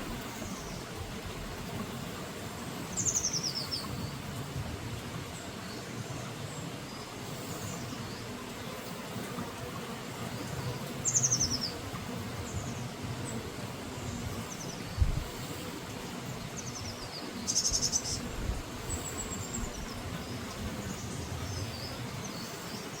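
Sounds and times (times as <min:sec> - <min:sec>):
small birds trilling: 0:10.2 - 0:23.0.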